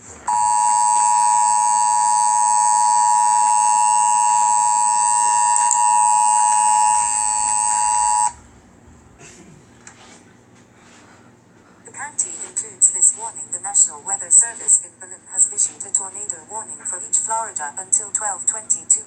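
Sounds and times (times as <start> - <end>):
two-tone alarm: 0.2 - 8.4.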